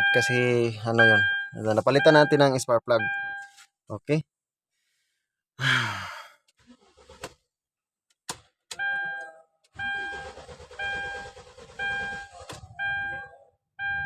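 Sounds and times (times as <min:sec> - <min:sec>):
dashboard warning chime: 0:00.0 - 0:03.6, 0:08.7 - 0:14.0
engine cranking without starting: 0:06.6 - 0:07.4, 0:09.8 - 0:13.2.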